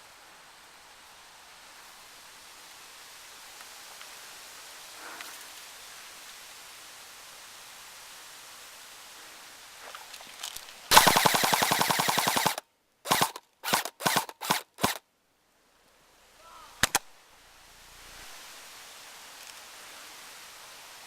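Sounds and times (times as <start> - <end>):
airsoft gun firing: 10.9 - 15.0
sharp clicks: 10.9 - 15.0, 16.8 - 17.1.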